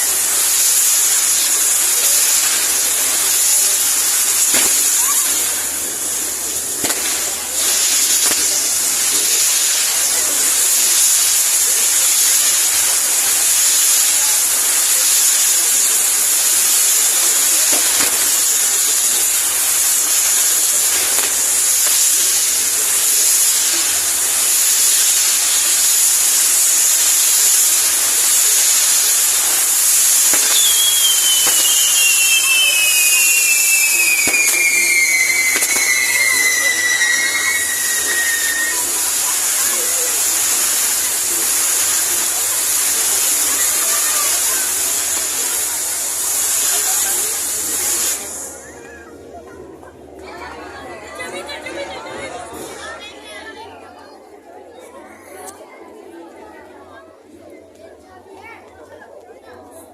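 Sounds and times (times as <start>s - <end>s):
whistling fireworks: 0.0s - 49.2s
fireworks hissing: 0.0s - 49.3s, 50.2s - 53.7s.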